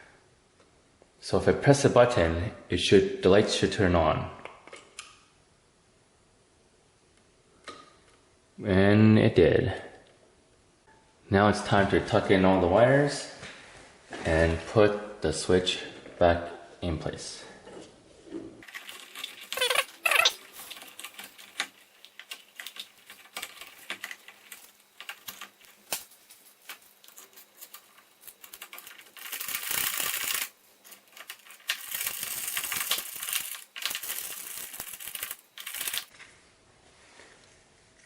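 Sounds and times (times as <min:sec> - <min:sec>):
brief squeaks: 0:19.6 - 0:20.4.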